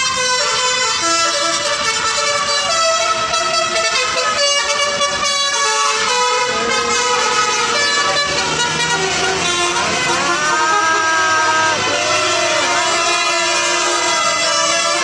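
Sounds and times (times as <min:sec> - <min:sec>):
bus multi-tone horn melody: 0:00.0 - 0:15.0.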